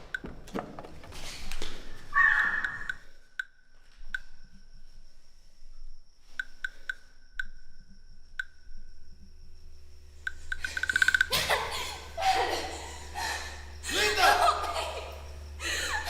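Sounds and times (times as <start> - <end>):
faint low hum: 0.0 - 16.0
sharp ringing clicks: 10.2 - 11.3.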